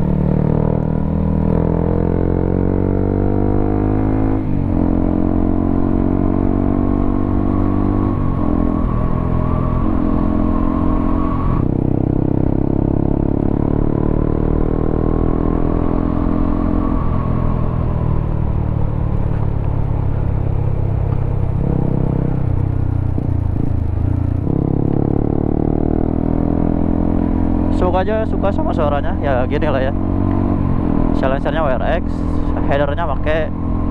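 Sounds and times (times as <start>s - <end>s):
motorcycle exhaust revving: 0.0s - 33.9s.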